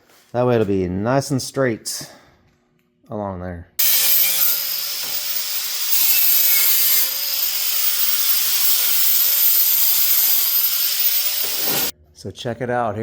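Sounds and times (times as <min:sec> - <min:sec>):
reciprocating saw cutting: 0:03.8 - 0:11.9.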